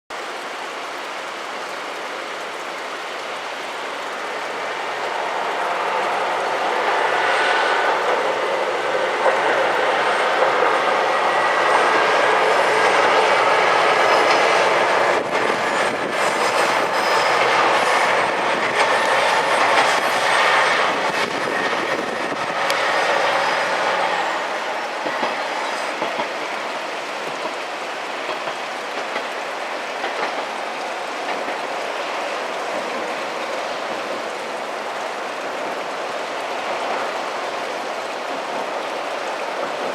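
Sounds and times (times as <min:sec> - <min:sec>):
train wheels clacking on rails: 0:04.8 - 0:35.8.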